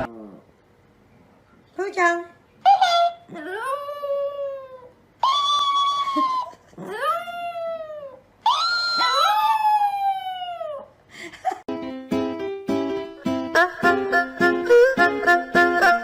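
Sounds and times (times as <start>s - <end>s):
pet howling: 3.3s - 10.9s.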